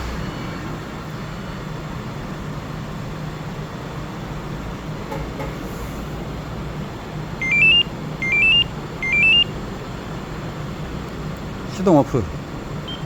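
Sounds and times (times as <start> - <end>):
rising electronic beeps: 0.0 - 1.1
engine idling: 0.0 - 13.0.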